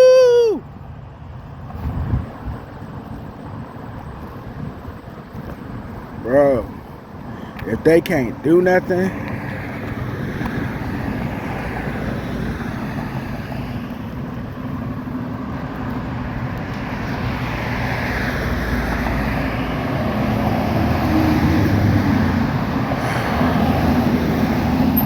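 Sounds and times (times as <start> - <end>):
road traffic rumble: 0.0 - 25.0
vehicle passing: 7.8 - 25.0.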